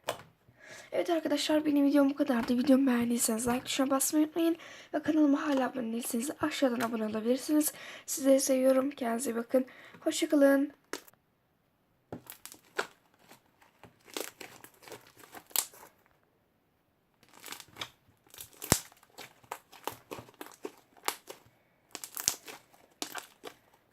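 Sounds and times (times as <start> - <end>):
slime squelching and crackling: 2.2 - 7.7, 12.2 - 16.0, 17.2 - 23.9.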